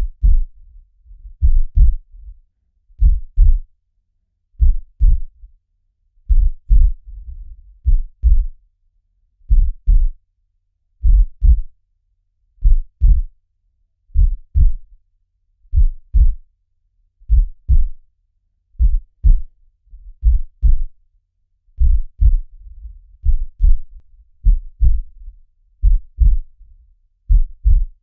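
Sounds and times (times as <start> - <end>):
heartbeat double thump: 0.0 - 0.5, 1.4 - 2.0, 3.0 - 3.7, 4.6 - 5.3, 6.3 - 7.0, 7.8 - 8.5, 9.5 - 10.1, 11.0 - 11.7, 12.6 - 13.3, 14.2 - 14.8, 15.7 - 16.4, 17.3 - 18.0, 18.8 - 19.5, 20.2 - 20.9, 21.8 - 22.5, 23.2 - 25.2, 25.8 - 26.5, 27.3 - 28.0.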